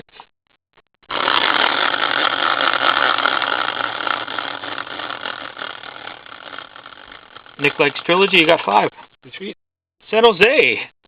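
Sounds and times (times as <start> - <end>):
prize wheel rapid ticking: 1.1 - 8.8.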